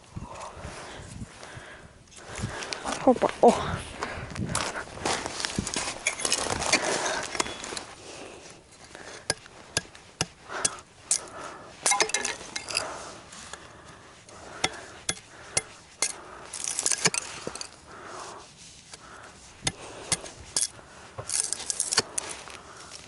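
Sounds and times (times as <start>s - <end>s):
rustling: 4.0s - 23.0s
dry wood breaking: 19.1s - 23.0s.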